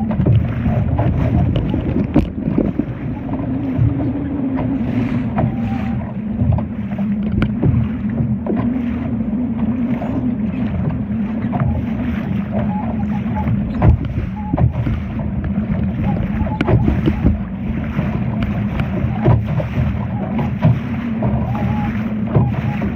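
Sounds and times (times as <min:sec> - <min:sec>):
wind noise: 0:00.0 - 0:08.9, 0:13.4 - 0:22.9
steady low drone: 0:00.0 - 0:22.9
water around boat: 0:00.0 - 0:22.9.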